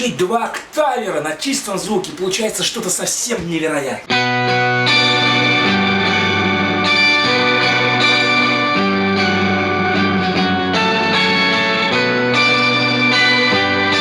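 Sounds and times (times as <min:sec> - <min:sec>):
pitch-shifted electric guitar chords: 0:04.1 - 0:14.0.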